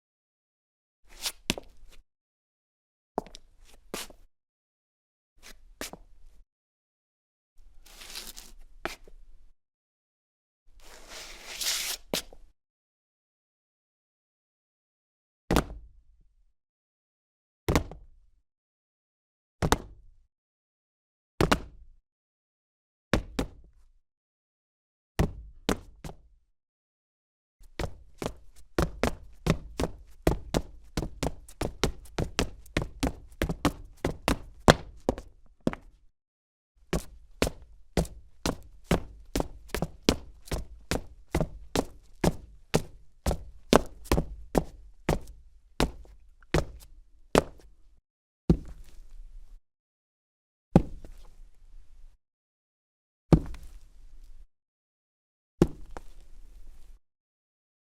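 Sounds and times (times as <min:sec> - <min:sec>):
boot footsteps on cement: 0:03.2 - 0:04.2, 0:27.6 - 0:36.0, 0:36.9 - 0:47.7, 0:48.5 - 0:49.0, 0:53.3 - 0:53.8, 0:55.6 - 0:56.2.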